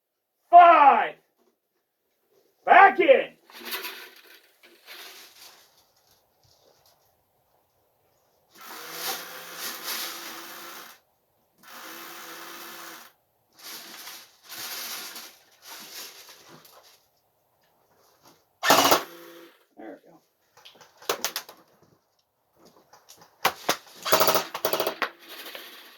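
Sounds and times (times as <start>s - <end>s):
toy machine gun bursts: 8.6s - 11.0s, 18.6s - 19.6s, 23.5s - 25.9s.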